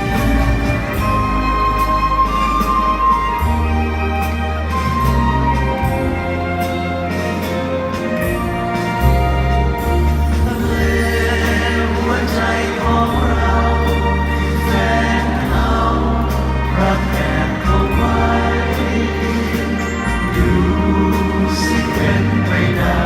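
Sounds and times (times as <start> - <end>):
live band music: 0.0 - 23.0
many voices singing together: 10.0 - 23.0.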